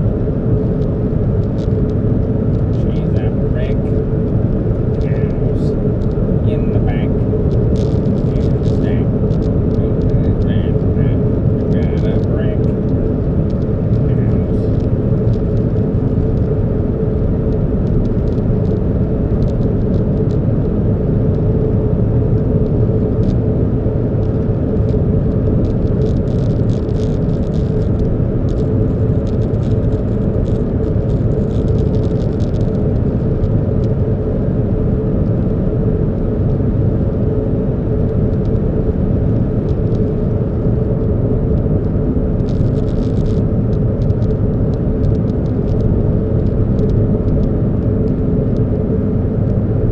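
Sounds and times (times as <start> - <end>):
car engine and road rumble: 0.0 - 49.9
faint steady hum: 0.0 - 49.9
light ticks: 25.6 - 32.8, 42.4 - 47.5.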